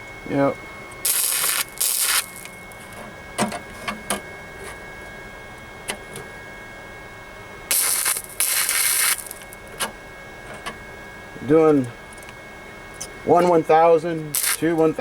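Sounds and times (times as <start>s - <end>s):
welding arc crackle: 1.0s - 2.9s, 7.7s - 9.7s, 14.3s - 15.0s.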